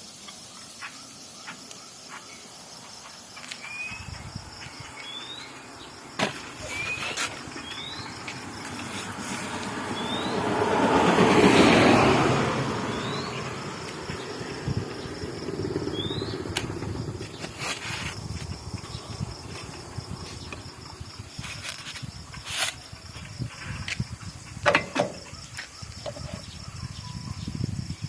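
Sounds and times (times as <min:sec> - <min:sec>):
insect chirping: 0:00.0 - 0:28.0
vehicle passing: 0:04.4 - 0:21.1.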